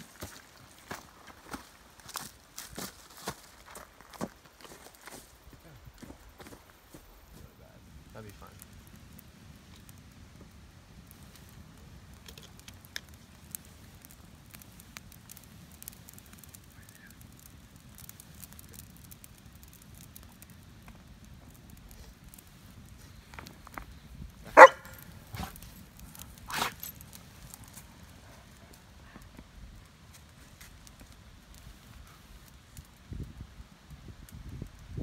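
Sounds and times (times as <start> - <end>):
low steady background noise: 0.0 - 34.2
dog barking: 24.6 - 25.5.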